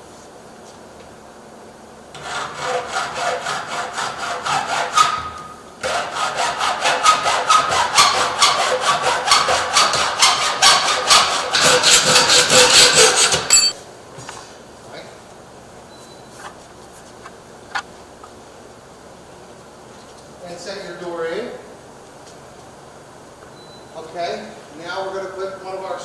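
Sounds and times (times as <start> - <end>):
hacksaw cutting: 2.2 - 13.8.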